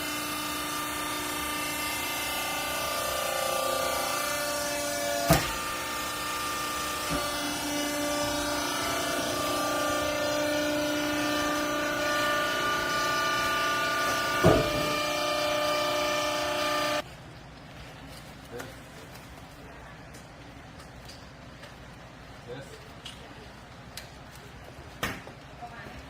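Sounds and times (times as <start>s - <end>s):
hydraulic baler whine: 0.0s - 17.0s.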